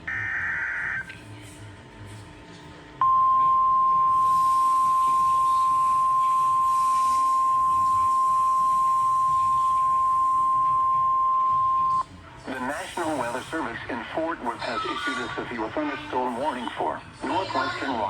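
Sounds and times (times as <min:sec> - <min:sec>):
steady alarm tone: 0:00.0 - 0:01.0, 0:03.0 - 0:12.0.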